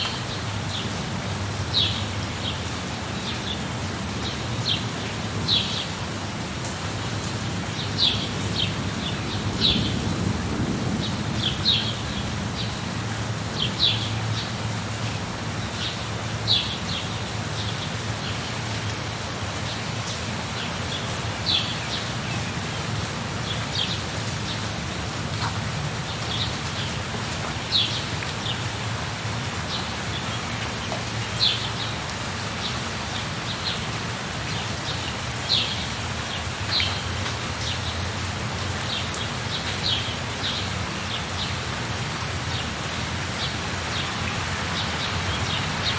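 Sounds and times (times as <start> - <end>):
steady rain: 0.0 - 45.9
low rumble of thunder: 8.6 - 13.3.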